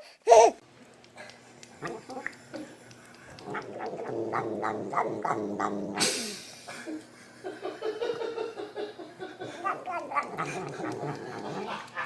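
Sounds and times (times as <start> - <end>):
chewing clicks: 0.8 - 5.0, 9.9 - 12.0
cat nom nom vocal sound: 1.7 - 6.4, 9.4 - 11.9.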